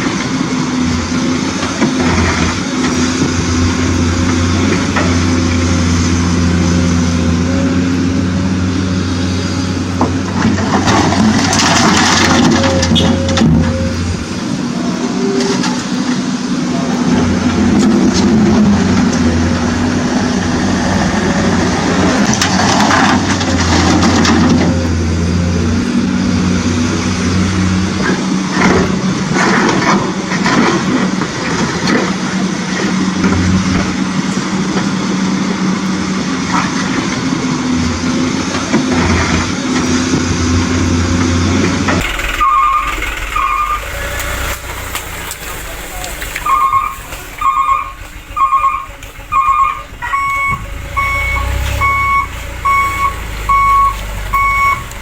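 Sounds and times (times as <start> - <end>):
toy vehicle motor drone: 42.0 - 45.4
short beeps: 46.4 - 54.9.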